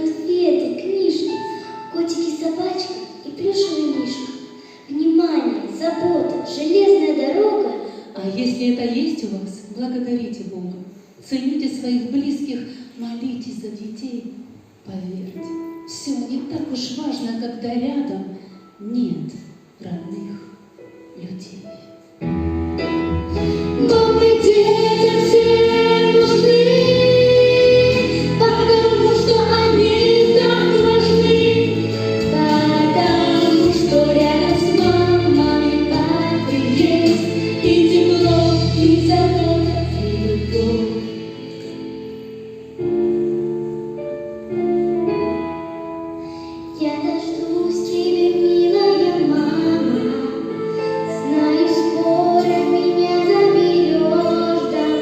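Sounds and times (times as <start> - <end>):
piano: 0.0 - 55.0
bass: 22.3 - 41.8.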